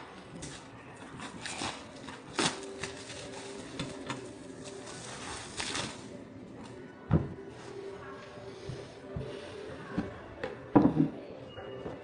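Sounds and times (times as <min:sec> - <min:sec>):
packaging rustle: 0:00.5 - 0:06.2.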